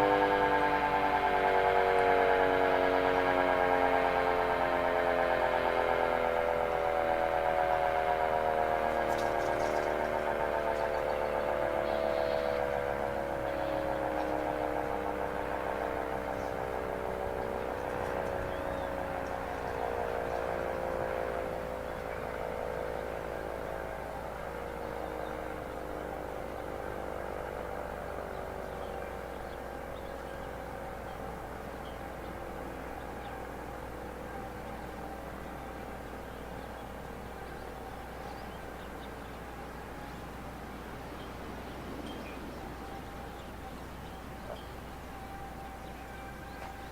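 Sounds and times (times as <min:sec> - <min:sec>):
siren winding down: 0:00.0 - 0:46.9.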